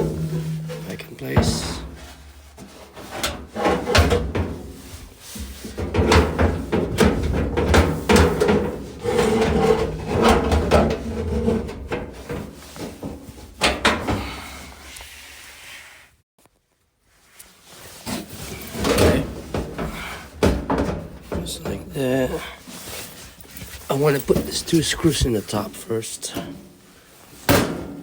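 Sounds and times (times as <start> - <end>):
knocking and clattering of dryer part: 0.0 - 14.3, 18.6 - 22.0.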